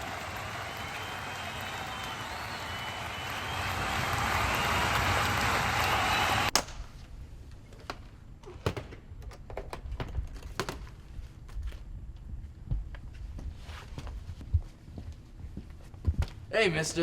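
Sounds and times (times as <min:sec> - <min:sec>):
audience applause: 0:00.0 - 0:06.5.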